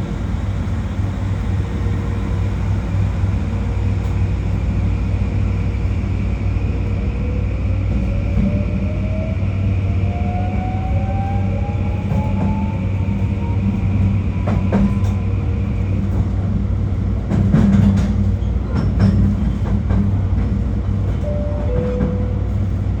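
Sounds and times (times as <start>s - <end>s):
train wheels rumbling on rail: 0.0s - 23.0s
rail-joint clicks: 17.2s - 22.8s.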